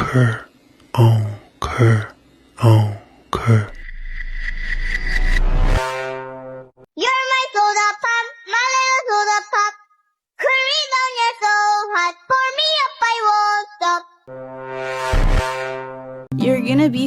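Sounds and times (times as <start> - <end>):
loud buzzy sustained tone: 3.7 - 6.8, 14.3 - 16.3
high child-like voice singing: 7.0 - 14.1.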